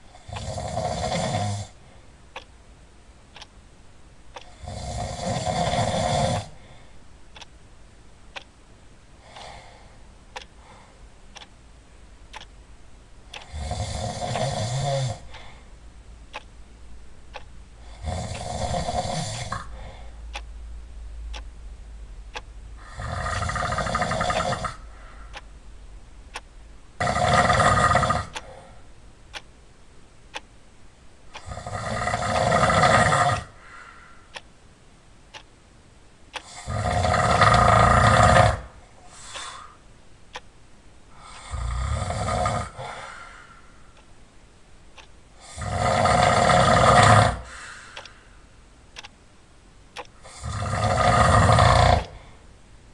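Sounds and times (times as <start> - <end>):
faint ticks: 0.0 - 2.6, 3.3 - 3.6, 4.3 - 6.6, 7.3 - 7.6, 8.3 - 8.6, 9.2 - 9.7, 10.3 - 11.6, 12.3 - 12.6, 13.2 - 15.6, 16.3 - 16.6, 17.3 - 20.6, 21.2 - 21.6, 22.3 - 25.6, 26.3 - 29.6, 30.3 - 30.6, 31.3 - 34.6, 35.3 - 35.6, 36.3 - 39.7, 40.3 - 40.5, 41.2 - 42.7, 44.9 - 48.3, 48.9 - 49.2, 49.9 - 52.2
loud snoring: 0.2 - 1.8, 4.5 - 6.5, 13.4 - 15.2, 17.9 - 19.7, 22.8 - 24.8, 27.0 - 28.4, 31.4 - 33.6, 36.4 - 38.8, 41.2 - 43.0, 45.4 - 47.5, 50.2 - 52.3.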